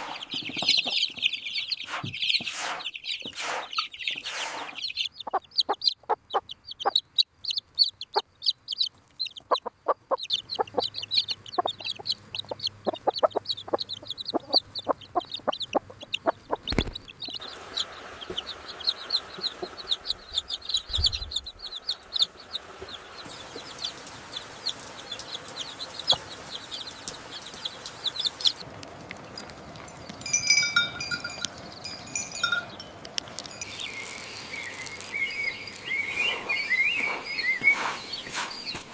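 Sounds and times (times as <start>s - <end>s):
chickens clucking: 0.0s - 30.2s, 33.0s - 38.9s
steady background hiss: 17.0s - 38.9s.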